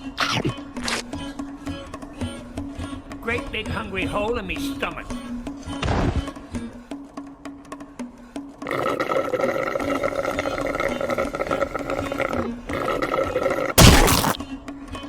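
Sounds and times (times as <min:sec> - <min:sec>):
loud noisy cartoon burst: 0:13.8 - 0:14.4.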